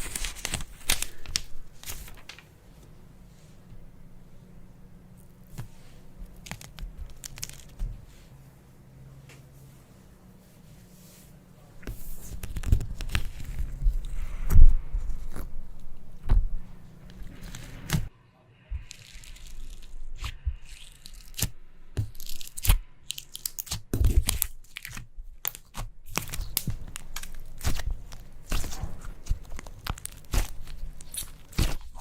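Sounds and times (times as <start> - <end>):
slime crackling and popping: 6.3 - 7.8, 18.8 - 32.0.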